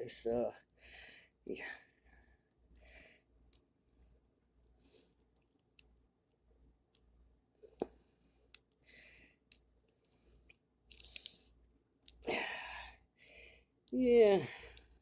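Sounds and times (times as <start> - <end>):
lock pick scraping and clicking: 10.9 - 11.4.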